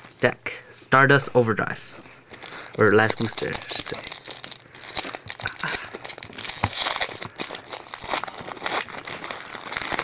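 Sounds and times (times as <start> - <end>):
foil wrapper crinkling and tearing: 2.3 - 10.0.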